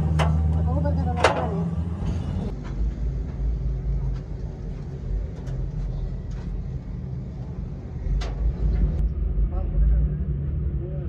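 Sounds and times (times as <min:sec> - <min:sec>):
engine idling: 0:00.0 - 0:02.6.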